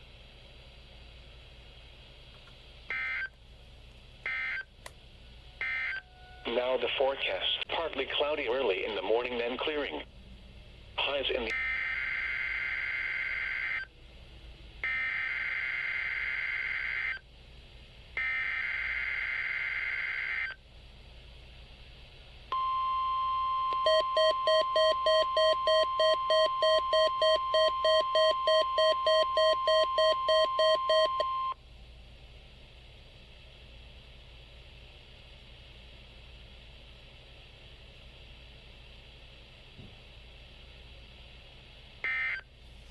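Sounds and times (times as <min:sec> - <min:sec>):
steady warning alarm tone: 0:02.9 - 0:03.3, 0:04.3 - 0:04.6, 0:05.6 - 0:06.8, 0:11.5 - 0:13.9, 0:14.8 - 0:17.2, 0:18.2 - 0:20.6, 0:22.5 - 0:31.6, 0:42.0 - 0:42.4.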